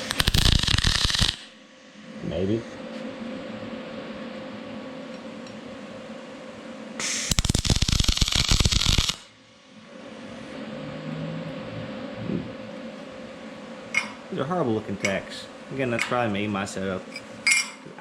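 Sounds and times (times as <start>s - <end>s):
welding arc crackling buzz: 0.0s - 1.6s, 7.0s - 9.4s
steady low hum: 0.0s - 18.0s.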